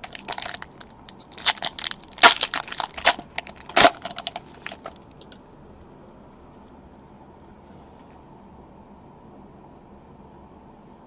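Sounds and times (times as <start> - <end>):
plastic wrapper tearing and crumpling: 0.0 - 5.4.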